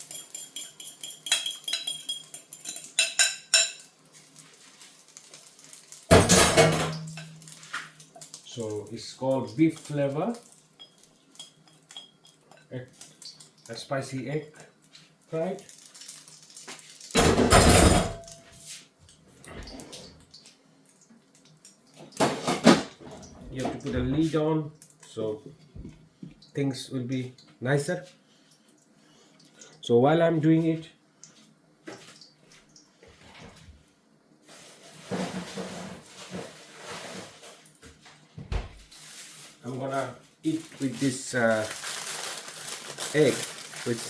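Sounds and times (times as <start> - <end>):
cookware clattering: 0.0 - 3.9, 6.1 - 7.6, 17.2 - 18.4
oil sizzling in a frying pan: 0.0 - 6.1, 14.9 - 17.2
faint knock and rustle: 25.5 - 26.4
light kitchen knocks: 38.4 - 38.8.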